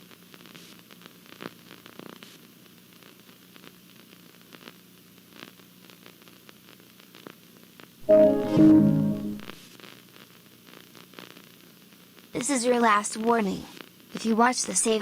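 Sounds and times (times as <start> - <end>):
faint steady hiss: 0.0 - 15.0.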